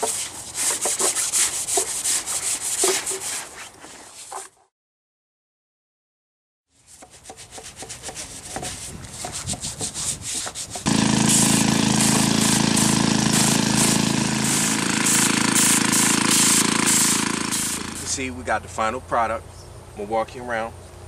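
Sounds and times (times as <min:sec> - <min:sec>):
brush scrubbing stone: 0:00.0 - 0:04.6, 0:06.7 - 0:15.8
pressure washer engine hum: 0:10.8 - 0:18.4
pressure washer spray hiss: 0:10.9 - 0:18.2.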